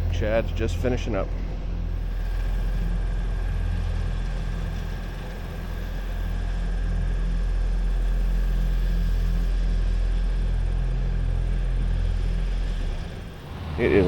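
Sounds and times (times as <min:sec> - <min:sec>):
engine droning: 0:00.0 - 0:14.0.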